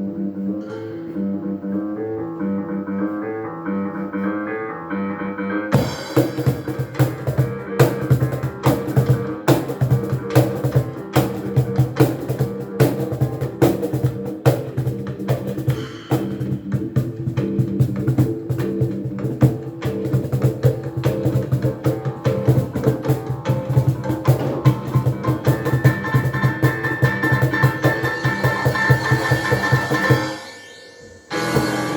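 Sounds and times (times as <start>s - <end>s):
percussion beat: 5.7s - 30.5s
melody on pitched instrument: 21.0s - 31.9s
sustained high note: 28.1s - 31.9s.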